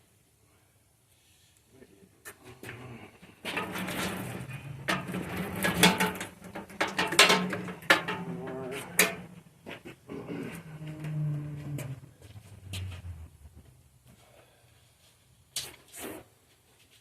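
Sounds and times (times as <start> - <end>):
low steady hum: 0.0 - 15.5
metal tools clanking and rattling: 3.5 - 9.3.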